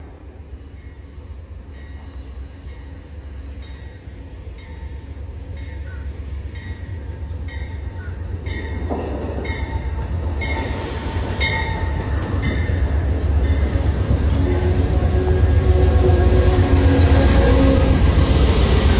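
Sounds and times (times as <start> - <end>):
passenger train rumble: 0.0 - 18.9.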